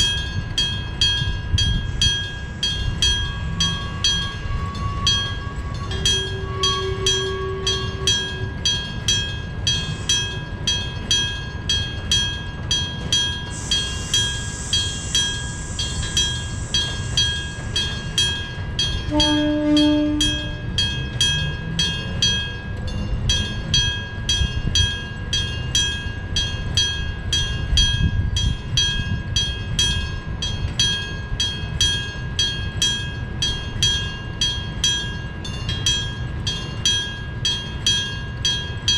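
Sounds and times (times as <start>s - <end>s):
passing train rumble: 0.0s - 38.9s
train horn blast: 4.5s - 8.6s, 19.1s - 20.8s.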